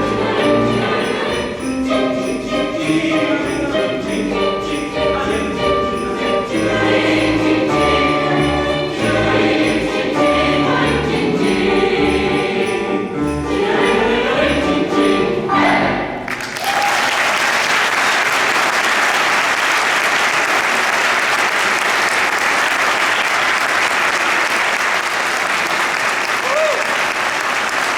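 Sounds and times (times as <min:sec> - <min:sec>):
sleigh bells: 0:00.0 - 0:16.1
choir singing: 0:00.0 - 0:16.3
percussion: 0:00.0 - 0:27.9
audience applause: 0:16.3 - 0:27.9.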